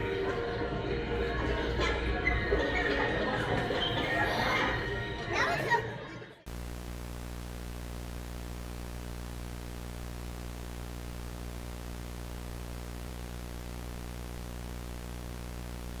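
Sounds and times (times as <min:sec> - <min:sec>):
electrical hum: 0:06.5 - 0:16.0.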